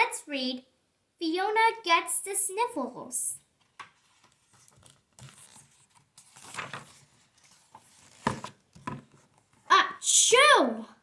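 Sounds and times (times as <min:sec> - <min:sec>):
paper rustling: 0:03.6 - 0:09.6.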